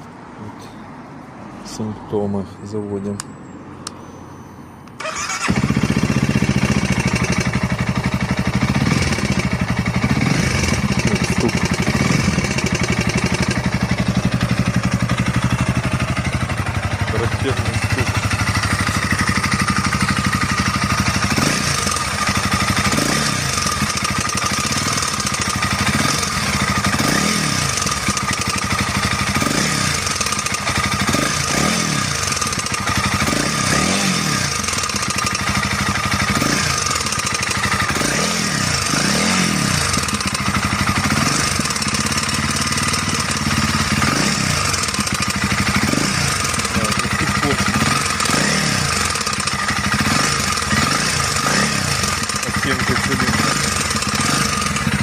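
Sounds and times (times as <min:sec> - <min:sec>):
motorcycle engine idling with knock: 0:39.8 - 0:55.0.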